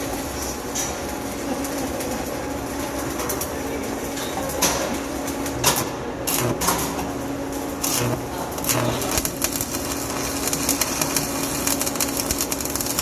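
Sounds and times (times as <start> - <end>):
welding arc crackling: 0.0 - 13.0
welding pops: 5.4 - 7.2, 7.8 - 13.0.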